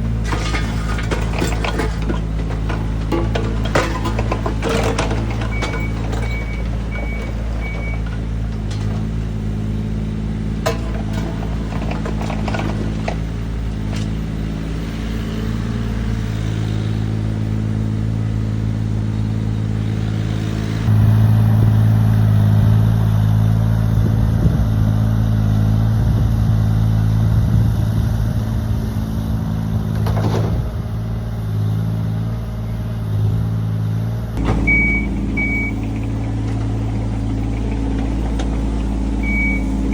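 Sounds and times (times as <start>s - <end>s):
excavator diesel engine running: 0.0s - 39.9s
beeping alarm: 34.4s - 35.8s, 39.2s - 39.9s
sharp clunks: 34.4s - 39.9s.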